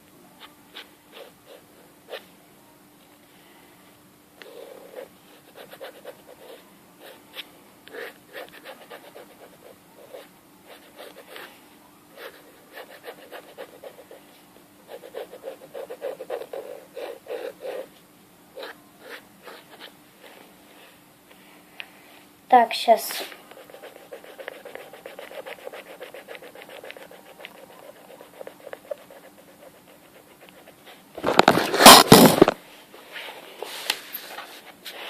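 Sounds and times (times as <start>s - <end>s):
scratchy drawing strokes on paper: 14.9s - 17.9s, 23.1s - 31.0s.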